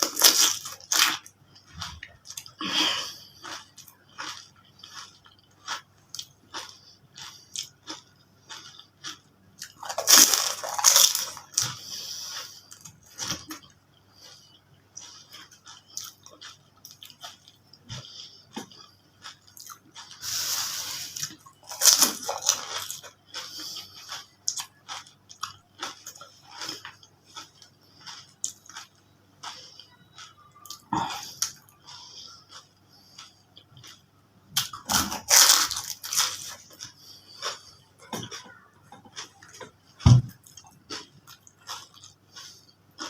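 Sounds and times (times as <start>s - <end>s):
crunching bites of crisp shells: 0.0s - 11.9s, 21.0s - 43.0s
wet chewing and mouth clicks: 0.0s - 43.0s.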